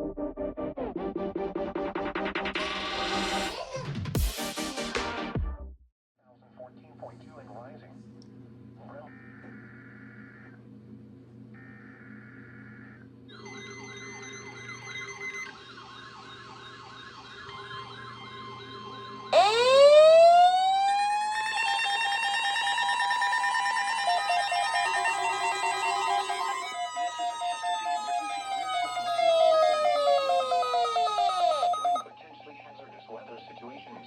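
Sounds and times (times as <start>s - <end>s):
warbling alarm: 12.6s - 32.2s
siren winding up: 19.3s - 32.1s
steady tones: 19.4s - 32.0s
receivers beeping: 21.8s - 32.0s.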